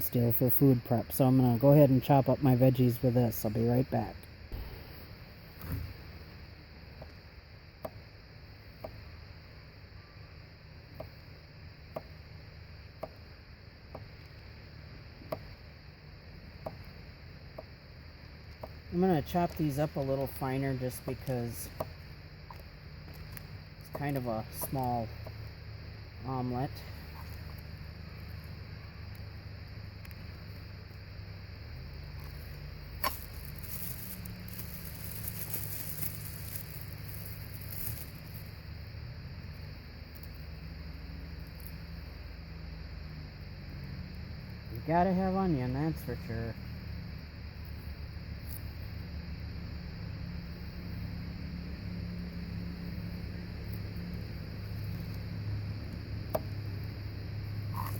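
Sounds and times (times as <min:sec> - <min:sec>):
sharp knock: 0:04.5 - 0:05.9
crunching and scraping of pieces: 0:32.2 - 0:38.4.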